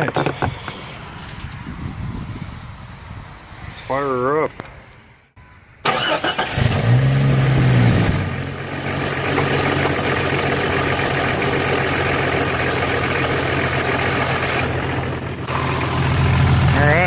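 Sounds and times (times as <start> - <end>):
car engine idling: 5.9 - 17.0.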